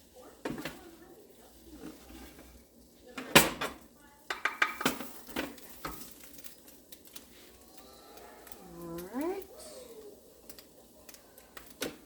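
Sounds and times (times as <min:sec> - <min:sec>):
cookware clattering: 0:03.2 - 0:06.7.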